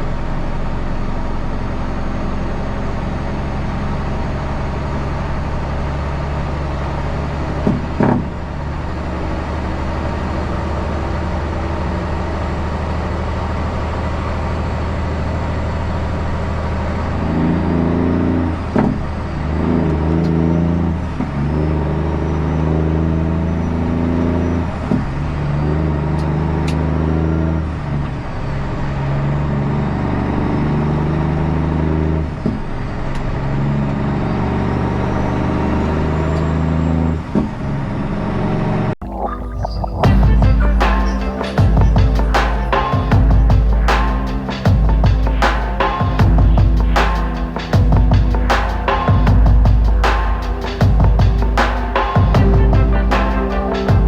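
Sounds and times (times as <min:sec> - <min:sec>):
truck engine droning: 0:00.0 - 0:54.0
low stepped tones: 0:39.0 - 0:54.0.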